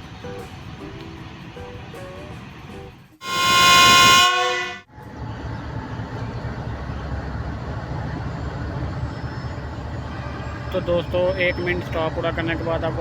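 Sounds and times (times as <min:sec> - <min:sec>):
diesel engine low rumble: 0:00.0 - 0:13.0
locomotive horn blast: 0:03.2 - 0:04.9, 0:10.0 - 0:11.5.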